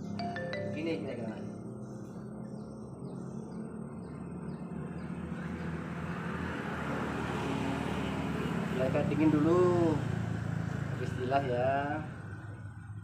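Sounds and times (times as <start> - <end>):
birds chirping: 0.0 - 6.3.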